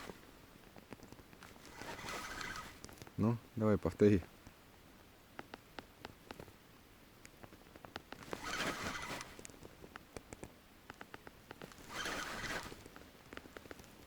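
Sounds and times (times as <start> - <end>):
reel clicks and ticks: 7.2 - 14.0
spinning reel cranking: 8.4 - 9.3, 11.9 - 12.8.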